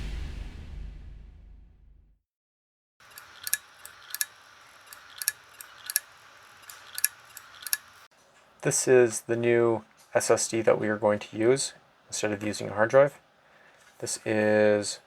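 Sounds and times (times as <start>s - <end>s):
hard drive clicking: 3.0s - 8.1s.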